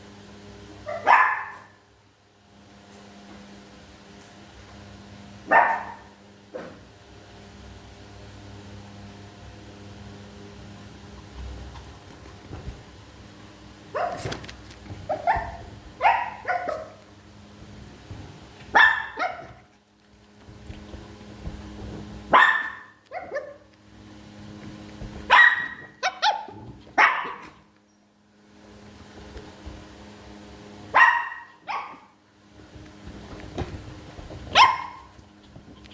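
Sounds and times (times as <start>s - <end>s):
small dogs yapping: 0.9s - 1.8s, 5.5s - 6.8s, 10.7s - 12.5s, 13.9s - 17.1s, 18.7s - 19.8s, 22.3s - 23.7s, 25.3s - 27.7s, 30.9s - 32.1s, 34.5s - 35.9s.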